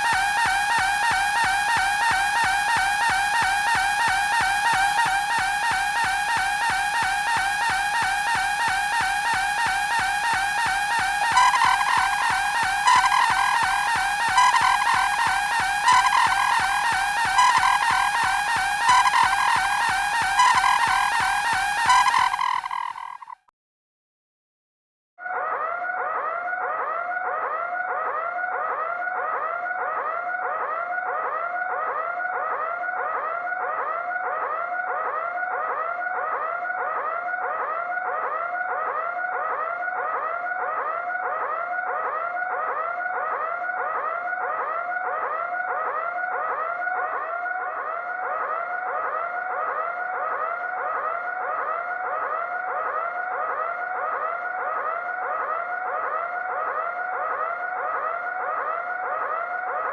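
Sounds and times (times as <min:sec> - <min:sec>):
electronic alarm warbling: 0:00.0 - 0:23.4.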